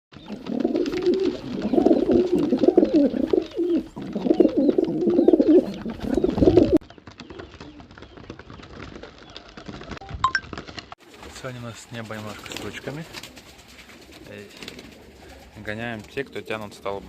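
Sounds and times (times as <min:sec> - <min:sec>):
pigeons cooing: 0:00.1 - 0:06.8, 0:12.3 - 0:17.0.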